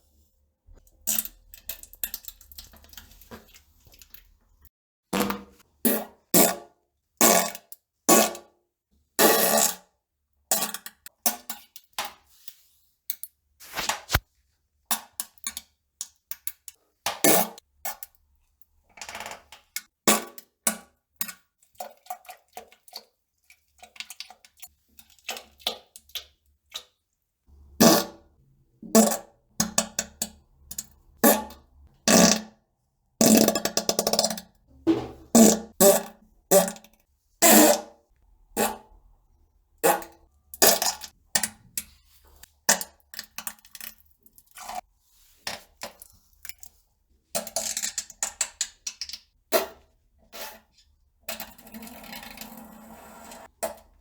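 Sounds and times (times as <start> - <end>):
fart sounds: 34.9 - 35.7.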